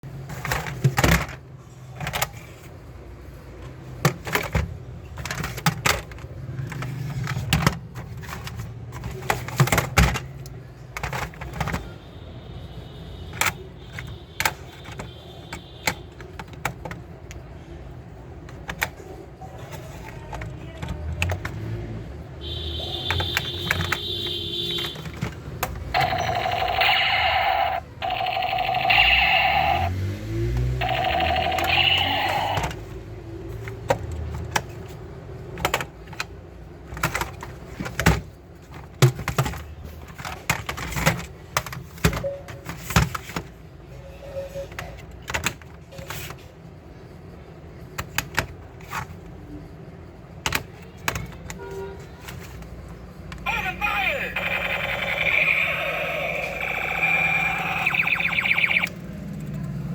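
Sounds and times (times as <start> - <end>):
electronic warbling tones: 54.5 - 59.0.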